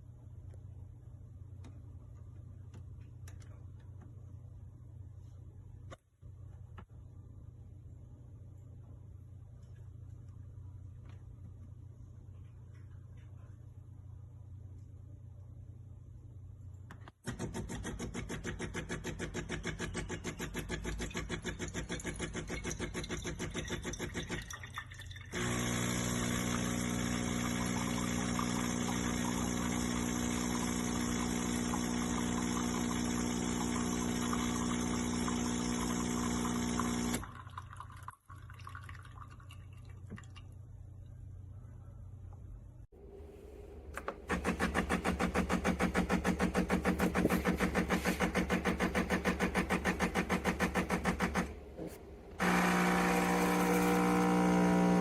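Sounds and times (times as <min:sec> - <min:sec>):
espresso machine pump pulsing: 0:25.4 - 0:37.2, 0:44.0 - 0:55.0.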